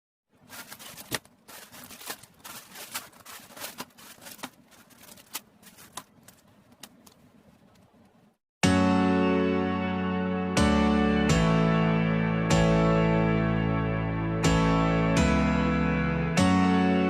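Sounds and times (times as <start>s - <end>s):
plastic parts rustling and clicking: 0.4s - 7.9s.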